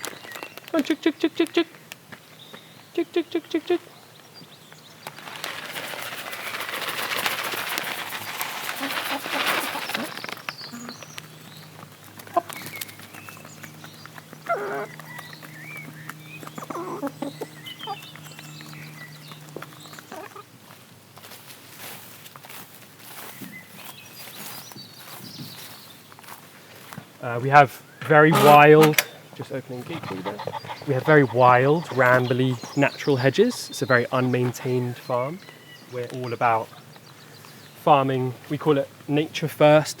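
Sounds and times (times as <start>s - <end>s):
rustling patter with clicks: 0.0s - 2.9s, 4.2s - 27.1s
bird calls and chirps: 2.3s - 20.4s, 23.2s - 26.1s, 27.8s - 38.8s.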